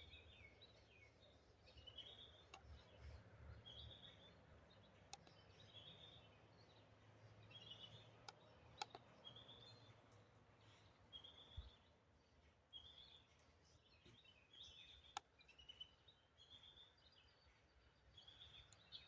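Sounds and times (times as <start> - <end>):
faint bird song: 0.0 - 19.0
faint sharp clicks: 2.5 - 3.2, 5.0 - 5.6, 8.2 - 9.2, 18.6 - 19.0.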